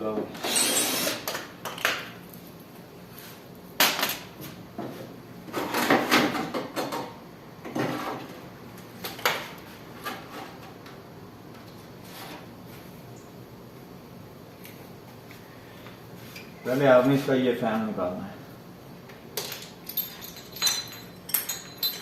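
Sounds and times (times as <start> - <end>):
metal parts and tools clattering: 19.4 - 22.0.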